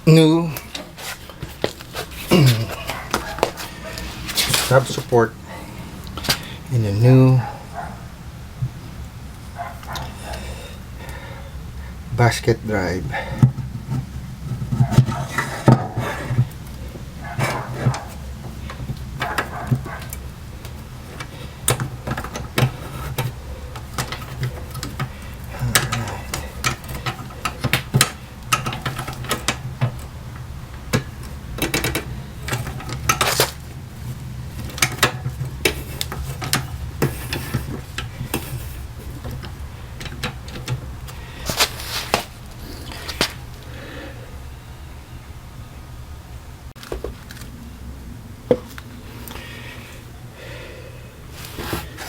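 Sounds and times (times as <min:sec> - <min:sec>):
steady low hum: 0:00.0 - 0:52.0.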